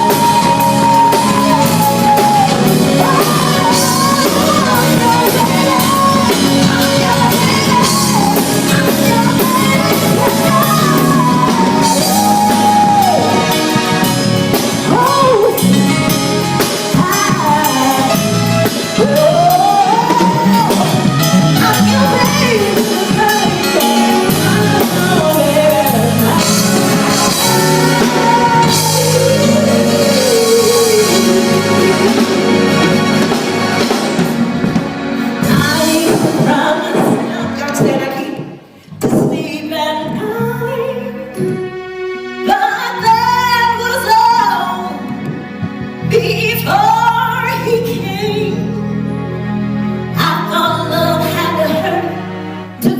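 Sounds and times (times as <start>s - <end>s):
live band with drums and guitar: 0.0s - 52.9s.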